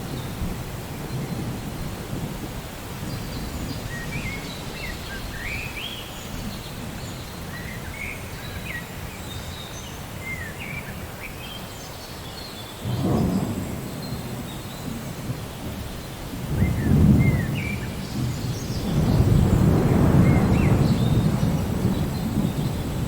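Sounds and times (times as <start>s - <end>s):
steady rain: 0.0s - 23.0s
thunder rumbling: 12.9s - 23.0s.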